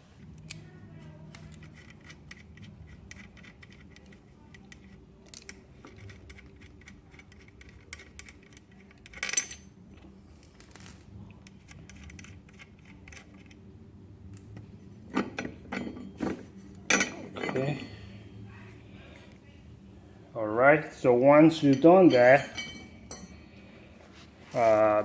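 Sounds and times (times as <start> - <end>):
metal parts clinking: 1.3 - 9.8.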